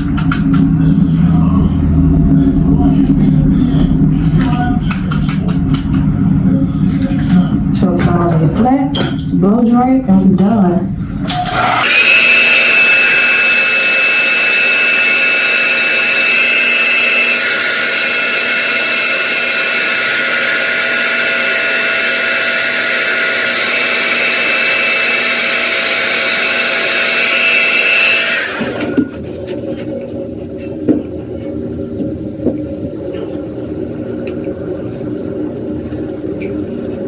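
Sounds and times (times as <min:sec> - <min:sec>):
small electric motor whining: 0:11.3 - 0:29.2.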